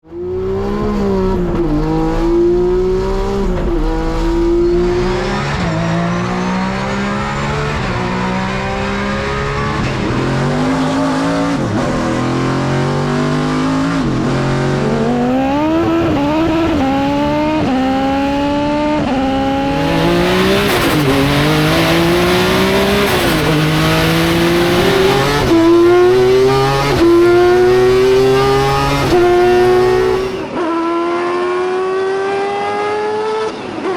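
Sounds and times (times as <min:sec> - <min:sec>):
racing car engines accelerating: 0:00.0 - 0:33.9.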